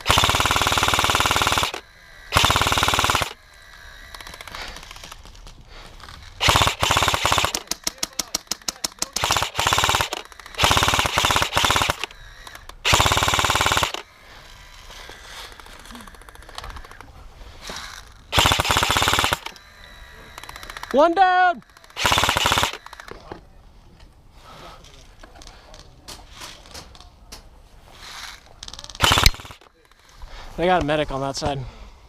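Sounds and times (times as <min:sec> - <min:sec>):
airsoft machine gun bursts: 0:00.0 - 0:03.4, 0:06.4 - 0:14.0, 0:17.8 - 0:19.7, 0:20.3 - 0:23.1, 0:28.9 - 0:29.8
quick separate shots: 0:29.0 - 0:29.7.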